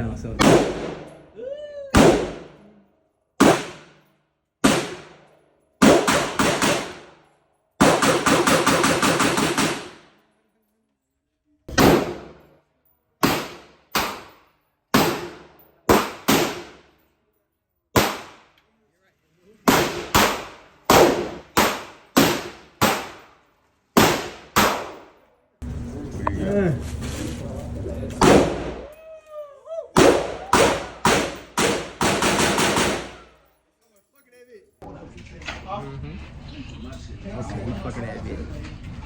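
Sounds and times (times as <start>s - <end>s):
gunshots: 0.4s - 1.2s, 2.0s - 2.6s, 3.4s - 4.0s, 4.6s - 5.2s, 5.8s - 7.2s, 7.8s - 10.1s, 11.7s - 12.4s, 13.2s - 14.3s, 14.9s - 16.8s, 18.0s - 18.5s, 19.7s - 23.3s, 24.0s - 25.1s, 28.2s - 28.9s, 30.0s - 33.4s
rapid gunfire burst: 7.8s - 9.9s, 30.1s - 33.2s.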